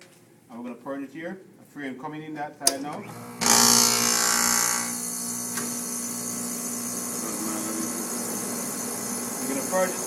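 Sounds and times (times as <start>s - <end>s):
refrigerant hissing from hose fitting: 5.0s - 10.0s.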